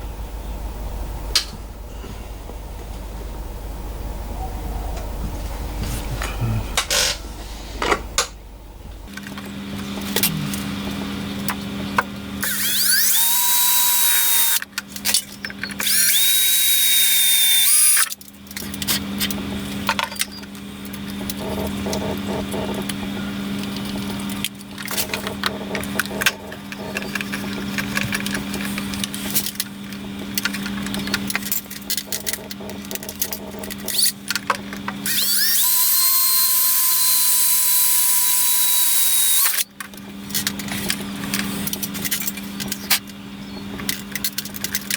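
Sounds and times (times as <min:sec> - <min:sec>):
electric drill whining: 0:12.4 - 0:14.6, 0:15.8 - 0:18.1, 0:35.0 - 0:39.6.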